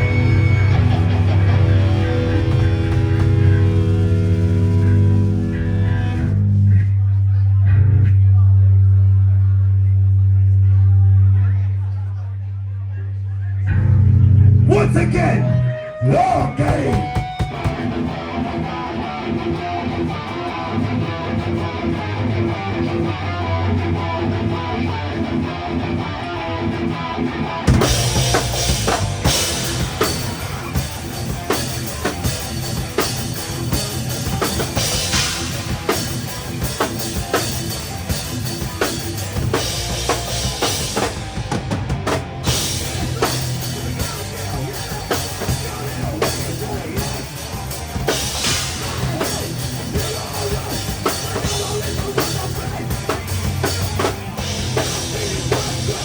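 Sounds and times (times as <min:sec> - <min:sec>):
drums and cymbals: 0:00.0 - 0:06.4, 0:16.0 - 0:18.7, 0:26.6 - 0:56.0
rock band playing: 0:00.0 - 0:06.9, 0:13.7 - 0:56.0
electric guitar: 0:00.0 - 0:09.3, 0:13.7 - 0:56.0.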